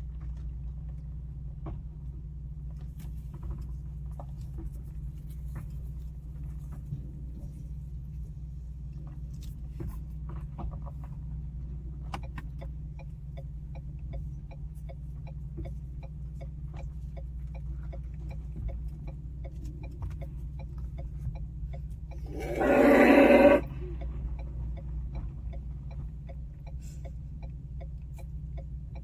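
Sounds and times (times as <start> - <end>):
car engine hum: 0.0 - 29.0
regular ticking: 12.6 - 24.9.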